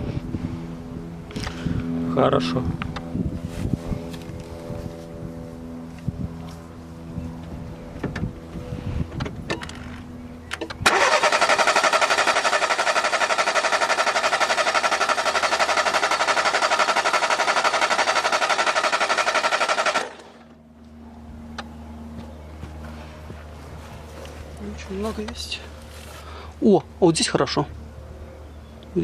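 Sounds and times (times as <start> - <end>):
car engine cranking: 9.5 - 20.5.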